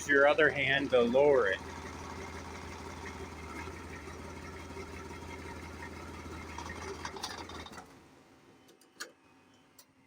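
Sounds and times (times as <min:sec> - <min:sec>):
engine idling: 0:00.0 - 0:08.0.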